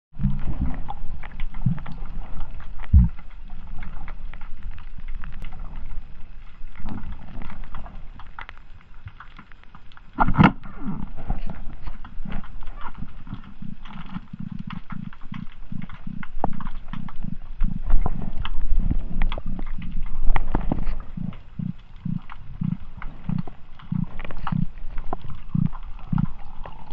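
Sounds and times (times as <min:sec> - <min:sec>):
fish grunting: 0:10.2 - 0:26.9.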